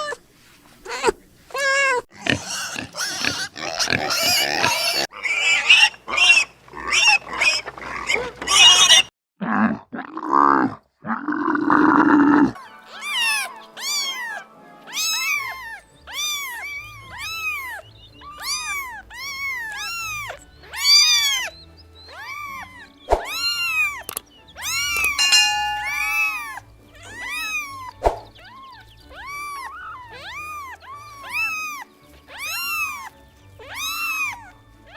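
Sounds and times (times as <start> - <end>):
animal squealing: 0.9 - 9.1, 11.7 - 34.9
animal growl: 9.4 - 12.6
animal high calls: 12.1 - 34.9.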